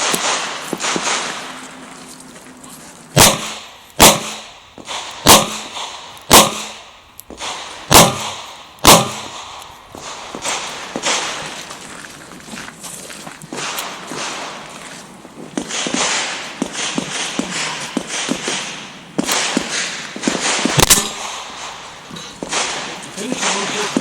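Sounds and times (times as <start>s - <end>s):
revolver shots with echo: 3.2s - 11.4s.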